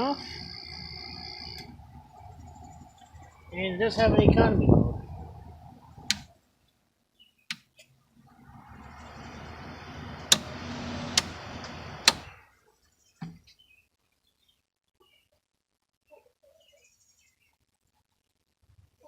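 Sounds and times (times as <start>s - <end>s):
air conditioner fan hum: 0.0s - 6.4s, 8.2s - 12.4s
sharp switch clicks: 6.1s - 6.3s, 10.2s - 12.3s.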